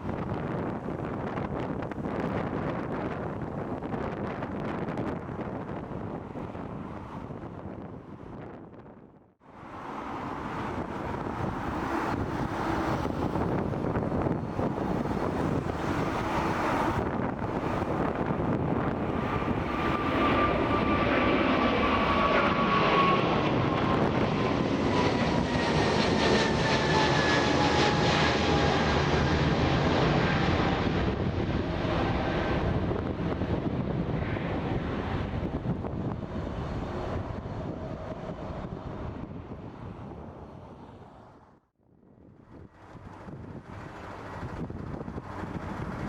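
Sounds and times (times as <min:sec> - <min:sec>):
jet engines roaring: 0:09.5 - 0:41.6, 0:42.3 - 0:46.0.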